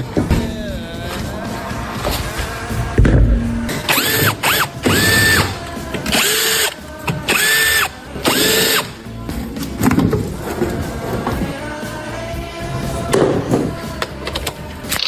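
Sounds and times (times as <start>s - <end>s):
cordless drill whining: 3.9s - 9.0s.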